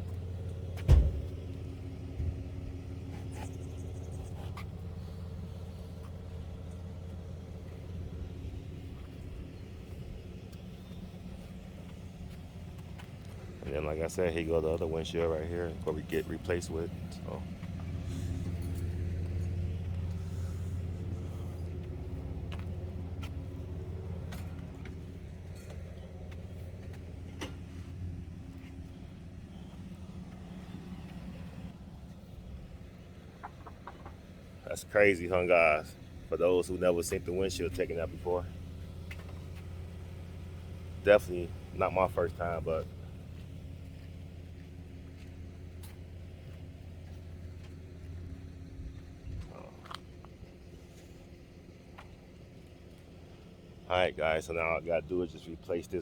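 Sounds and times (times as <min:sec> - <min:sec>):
low mechanical motor hum: 0:00.0 - 0:34.7, 0:35.9 - 0:53.8
vehicle engine idling: 0:00.0 - 0:56.0
sharp thump: 0:00.8 - 0:01.4.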